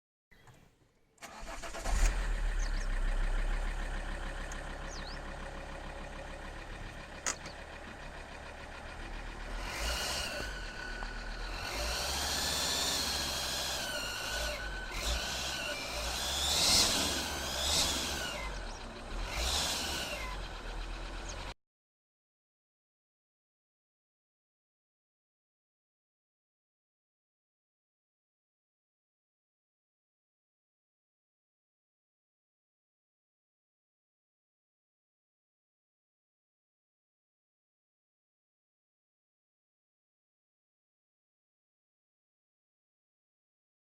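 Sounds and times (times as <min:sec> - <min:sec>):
diesel engine starting and idling: 0:01.2 - 0:21.6.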